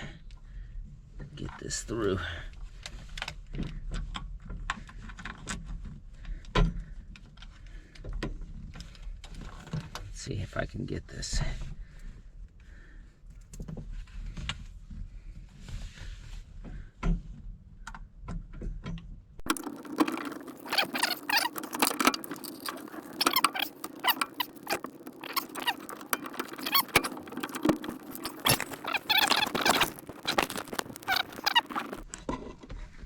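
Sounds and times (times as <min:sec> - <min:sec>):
clicks and scrapes: 0:19.4 - 0:32.9.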